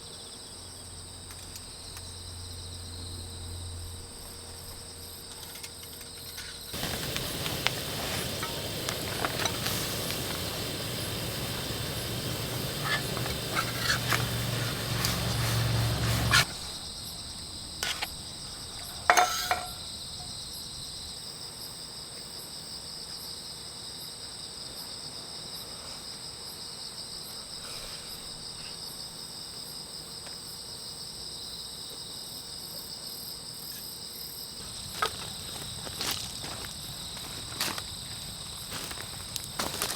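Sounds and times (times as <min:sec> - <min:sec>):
crickets chirring: 0:00.0 - 0:39.9
rushing noise with low rumble: 0:06.8 - 0:16.5.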